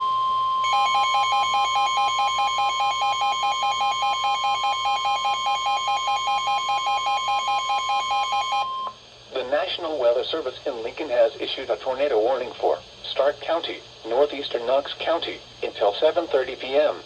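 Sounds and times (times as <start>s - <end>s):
steady high alert tone: 0.0s - 8.9s.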